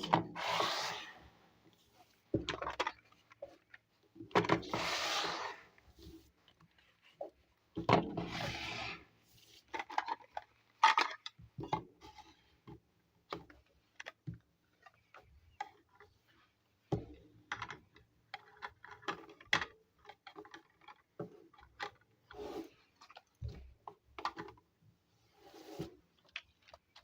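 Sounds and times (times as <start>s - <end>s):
plastic parts clicking and tapping: 2.4s - 4.6s, 9.7s - 11.9s, 17.5s - 22.0s.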